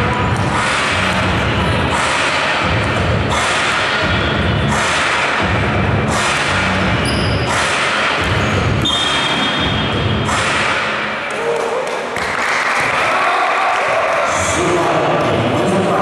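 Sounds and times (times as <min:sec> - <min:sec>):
basketball bouncing on court: 0:00.0 - 0:10.7
crowd and players noise: 0:00.0 - 0:16.0.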